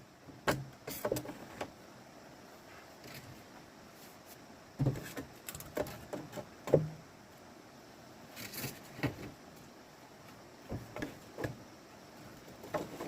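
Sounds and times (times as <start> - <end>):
scraping rustle: 2.6 - 6.5, 8.3 - 11.6.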